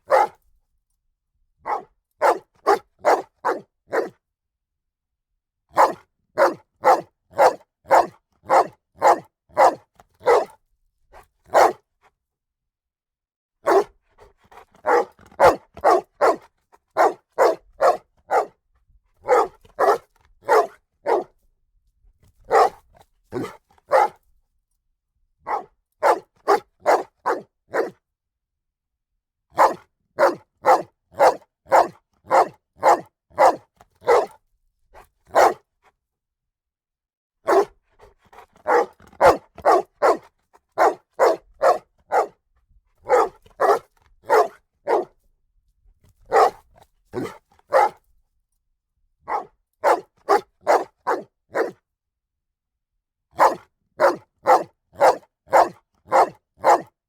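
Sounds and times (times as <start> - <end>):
dog barking: 0.0 - 0.4, 1.6 - 4.2, 5.7 - 10.6, 11.5 - 11.8, 13.6 - 18.6, 19.2 - 21.4, 22.4 - 24.2, 25.4 - 28.0, 29.5 - 34.4, 35.0 - 35.7, 37.4 - 42.4, 43.0 - 45.2, 46.3 - 48.0, 49.2 - 51.8, 53.3 - 57.0.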